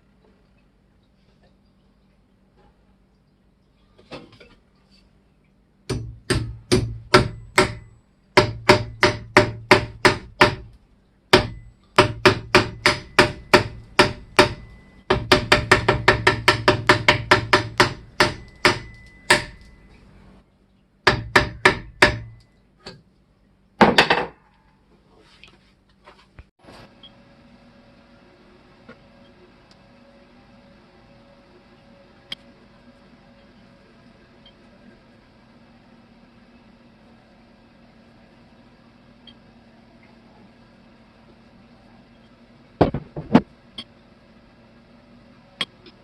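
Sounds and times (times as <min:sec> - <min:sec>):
hammer striking metal: 0:05.9 - 0:10.7, 0:11.4 - 0:19.8, 0:21.1 - 0:22.4.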